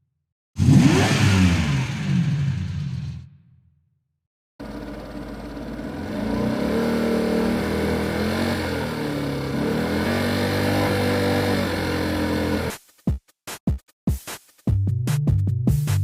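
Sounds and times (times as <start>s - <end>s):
vehicle engine revving: 0.6s - 3.2s, 4.6s - 12.7s.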